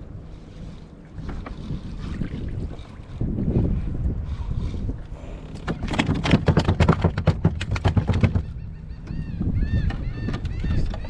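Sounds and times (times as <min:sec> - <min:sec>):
wind buffeting microphone: 0:00.0 - 0:11.0
sharp knocks and clatter: 0:05.7 - 0:08.5.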